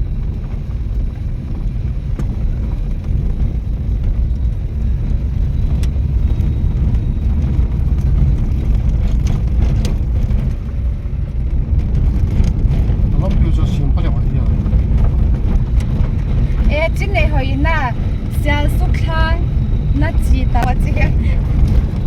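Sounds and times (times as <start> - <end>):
faint ticks and rattles: 0.0 - 22.0
road vehicle rumble: 0.0 - 22.0.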